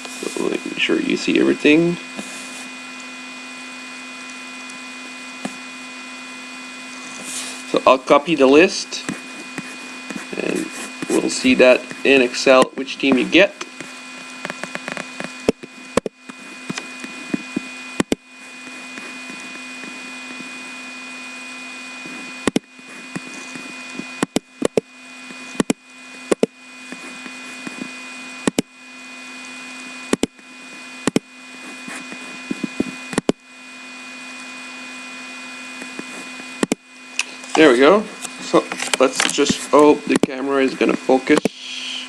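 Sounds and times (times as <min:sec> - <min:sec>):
electrical hum with high whine: 0:00.0 - 0:42.0
computer mouse clicks: 0:22.4 - 0:23.3, 0:31.1 - 0:31.3, 0:35.8 - 0:36.8.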